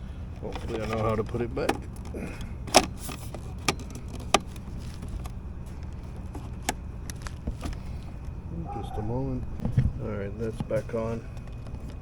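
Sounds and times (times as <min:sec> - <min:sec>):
hard plastic clicking: 0:00.0 - 0:08.4
low rumble: 0:06.9 - 0:12.0.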